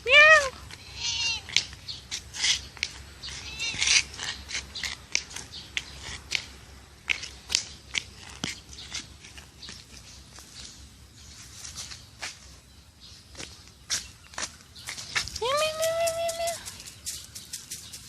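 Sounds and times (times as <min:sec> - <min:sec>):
cat meowing: 0:00.0 - 0:01.6, 0:03.4 - 0:03.9.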